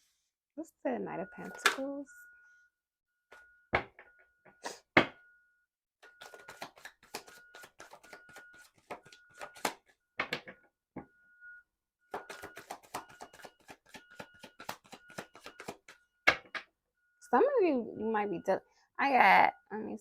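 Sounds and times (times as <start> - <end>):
cards being shuffled: 6.2 - 9.8, 12.2 - 16.0.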